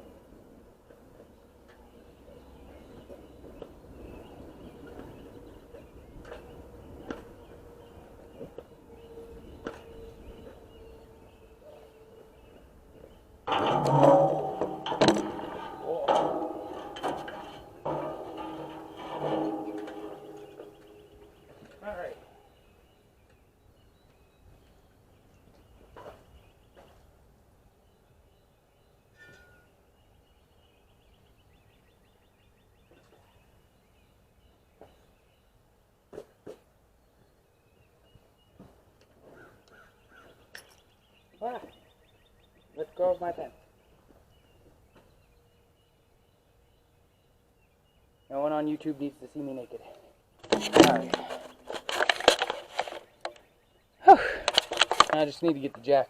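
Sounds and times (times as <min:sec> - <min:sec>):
bird chirp: 0:00.9 - 0:56.0
handling knocks: 0:13.5 - 0:22.2, 0:50.4 - 0:53.4.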